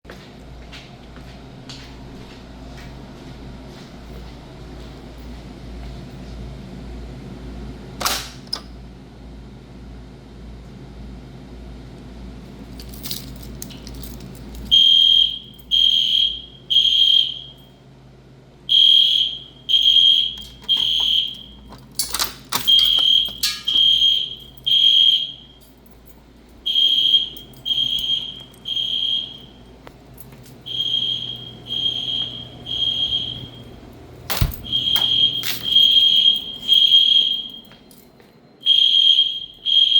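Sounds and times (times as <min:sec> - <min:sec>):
fire alarm beeps: 0:14.6 - 0:17.8, 0:18.7 - 0:39.9
low hum: 0:18.7 - 0:39.8.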